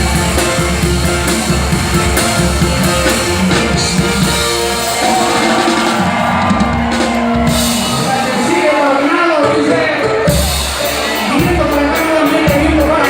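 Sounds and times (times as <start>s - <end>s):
drum kit: 0.0s - 13.0s
live rock band playing: 0.0s - 13.0s.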